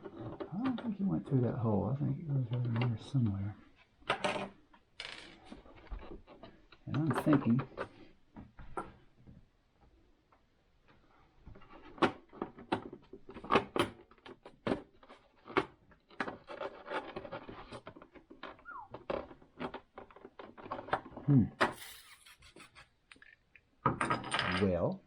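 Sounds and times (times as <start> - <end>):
small parts clicking and knocking: 11.7 - 24.9.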